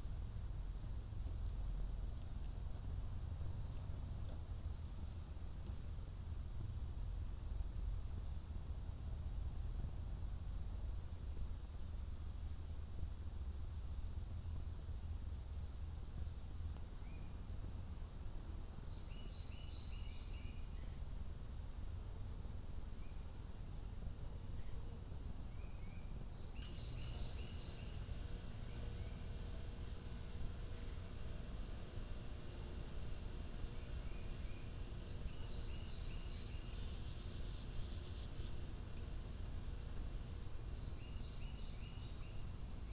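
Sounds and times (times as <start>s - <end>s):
crickets trilling: 0.0s - 42.9s
low outdoor rumble: 26.6s - 42.9s.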